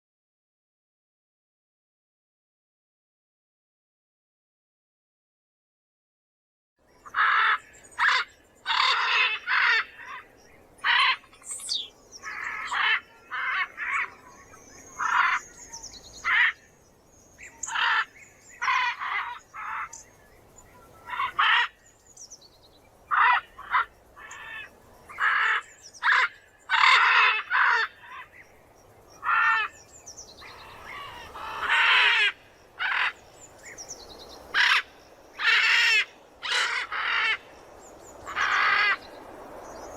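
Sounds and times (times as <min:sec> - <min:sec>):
macaws squawking: 0:07.1 - 0:10.2, 0:17.6 - 0:20.0, 0:23.1 - 0:28.3, 0:30.4 - 0:33.2, 0:34.5 - 0:37.4.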